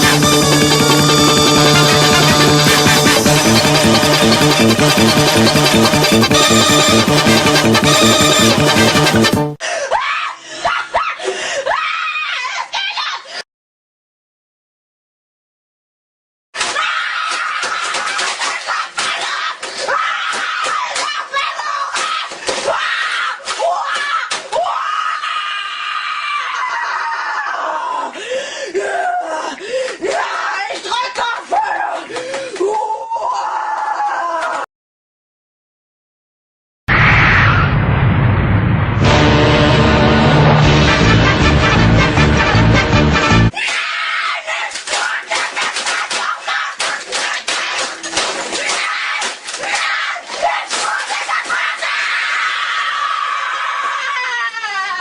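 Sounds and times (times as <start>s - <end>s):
loud music: 0.0s - 9.6s, 39.0s - 43.5s
sharp hits: 0.0s - 9.6s, 36.9s - 43.3s
boy screaming: 9.8s - 13.3s, 18.7s - 28.2s, 28.8s - 34.6s, 43.5s - 45.4s, 48.6s - 55.0s.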